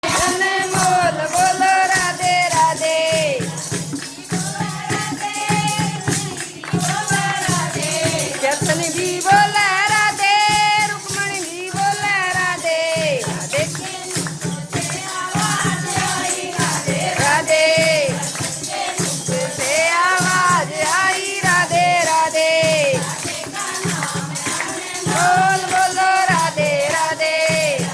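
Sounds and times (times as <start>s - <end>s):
jingling percussion: 0.0s - 27.9s
steady drum beat: 0.0s - 27.9s.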